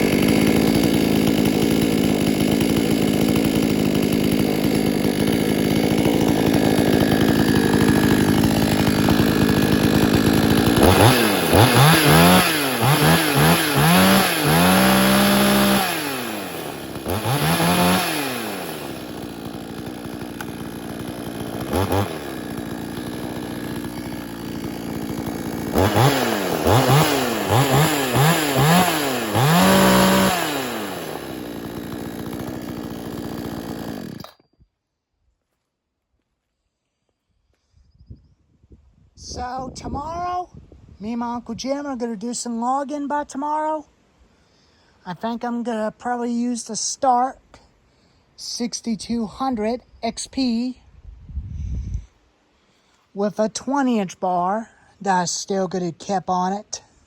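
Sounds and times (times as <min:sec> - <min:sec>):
chainsaw engine revving: 0:00.0 - 0:34.4.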